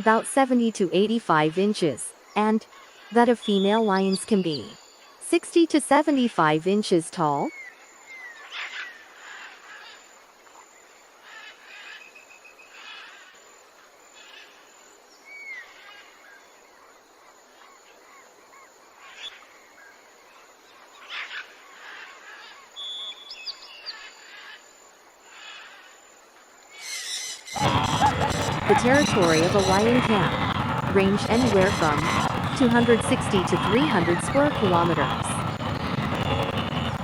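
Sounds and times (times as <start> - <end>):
faint outdoor hiss: 0.0 - 27.5
birds chirping and calling: 26.8 - 37.0.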